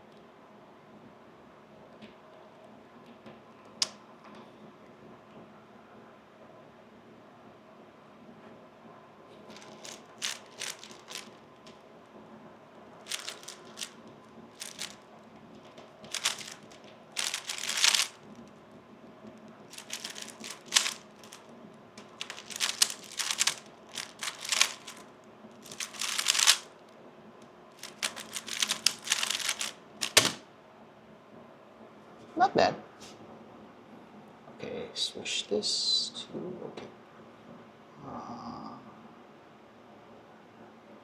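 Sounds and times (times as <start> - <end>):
plastic cube clicking and clacking: 9.6 - 11.4, 13.1 - 14.0, 14.6 - 15.0, 16.1 - 18.2, 19.7 - 21.4, 22.0 - 25.0, 25.6 - 26.7, 27.8 - 30.4.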